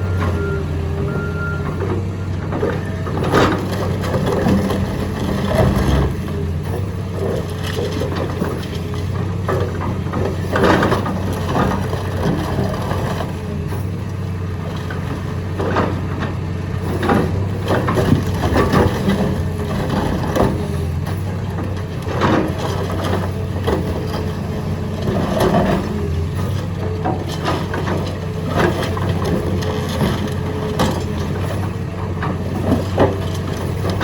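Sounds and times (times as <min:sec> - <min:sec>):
excavator diesel engine running: 0:00.0 - 0:34.0.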